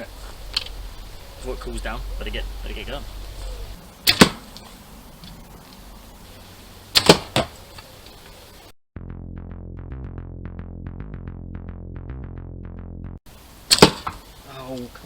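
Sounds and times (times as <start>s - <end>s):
arrow striking: 0.0s - 5.4s, 6.9s - 8.4s, 13.7s - 14.2s
bow string snapping: 0.2s - 1.4s, 2.1s - 5.9s, 6.9s - 8.4s, 13.7s - 14.2s.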